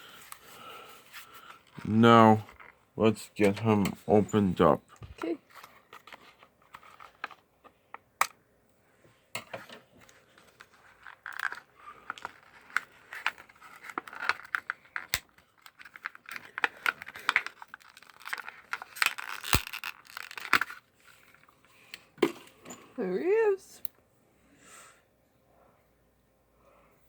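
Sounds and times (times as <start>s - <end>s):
cardboard and plastic tearing: 10.4s - 21.3s
packaging snapping: 10.6s - 20.9s.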